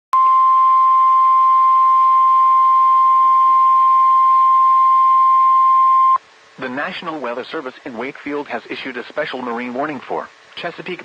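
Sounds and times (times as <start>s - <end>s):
steady alarm tone: 0.2s - 6.2s.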